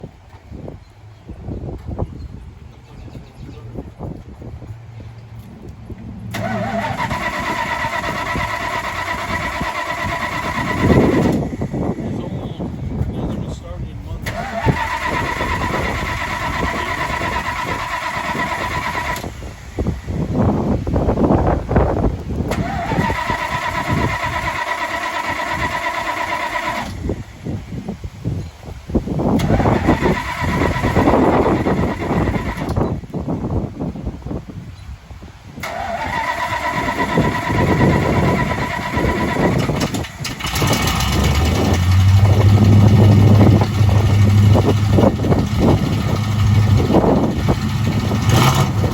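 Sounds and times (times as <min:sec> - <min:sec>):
engine firing with loud burst: 0:06.2 - 0:12.6, 0:14.2 - 0:20.0, 0:22.4 - 0:27.4, 0:29.3 - 0:32.8, 0:35.6 - 0:48.9
starter cranking engine: 0:06.2 - 0:20.0, 0:22.2 - 0:27.3, 0:29.3 - 0:33.0, 0:35.6 - 0:48.9
engine sputtering pops: 0:37.0 - 0:48.9.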